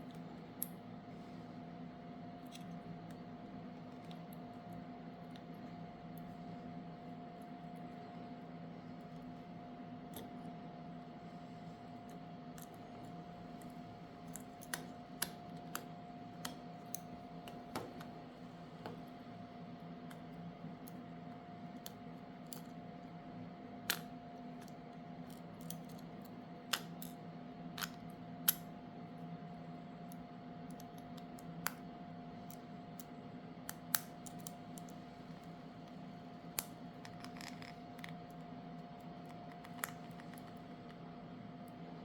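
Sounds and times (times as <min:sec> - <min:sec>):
low electrical hum: 0:00.0 - 0:42.0.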